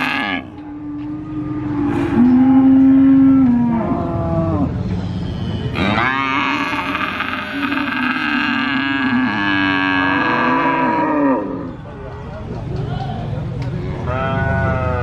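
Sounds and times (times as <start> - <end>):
calf mooing: 0.0 - 1.1, 5.8 - 11.6.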